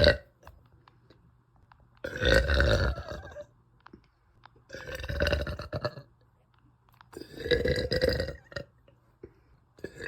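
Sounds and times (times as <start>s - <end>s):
woman burping: 7.2s - 8.8s.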